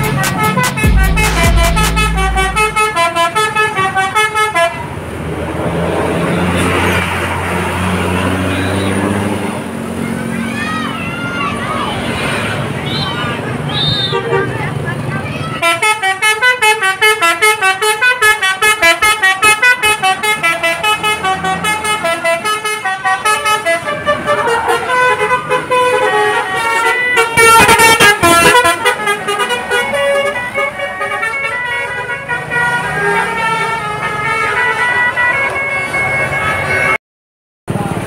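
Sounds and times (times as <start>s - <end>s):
bus air horn playing tune: 0.0s - 5.0s, 15.6s - 37.0s.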